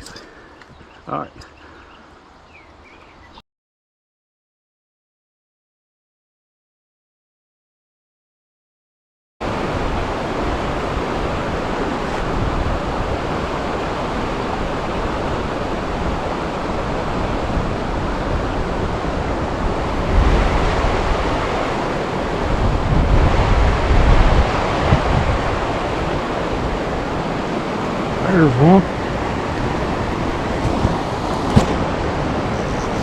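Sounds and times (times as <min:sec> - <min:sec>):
stream rushing: 0:09.4 - 0:33.0
wind on microphone: 0:09.4 - 0:33.0.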